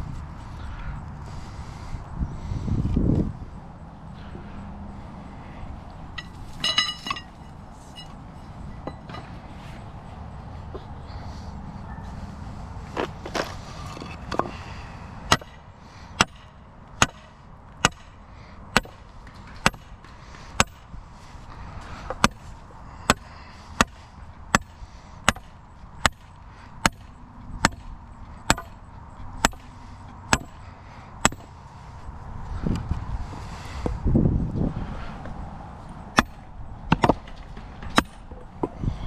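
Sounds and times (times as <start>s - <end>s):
ringing hammer strikes: 6.2s - 9.4s, 16.2s - 18.2s, 24.6s - 29.7s, 30.3s - 30.6s, 31.2s - 31.5s.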